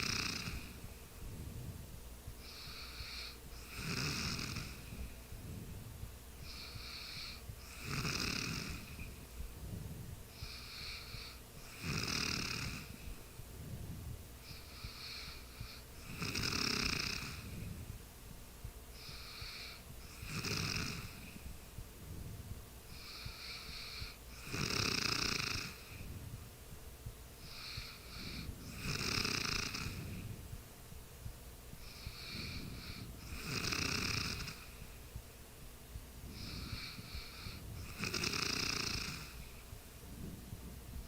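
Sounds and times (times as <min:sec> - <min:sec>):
person snoring: 0:00.0 - 0:00.8, 0:02.4 - 0:05.0, 0:06.4 - 0:09.2, 0:10.4 - 0:13.0, 0:14.5 - 0:17.7, 0:19.0 - 0:21.4, 0:22.9 - 0:26.1, 0:27.4 - 0:30.4, 0:31.8 - 0:34.7, 0:36.3 - 0:39.5
soft breath: 0:00.0 - 0:11.8, 0:12.6 - 0:16.2, 0:17.2 - 0:18.0, 0:18.9 - 0:24.5, 0:25.6 - 0:26.5, 0:27.4 - 0:30.6, 0:31.7 - 0:35.2, 0:35.9 - 0:41.0.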